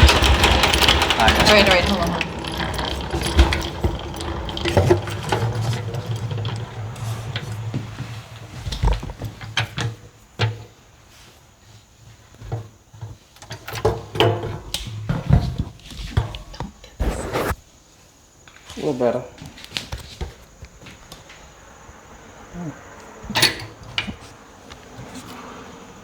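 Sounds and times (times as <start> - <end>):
knocks and clunks: 0.0 - 9.4
honey extractor gears rattling: 0.0 - 9.6.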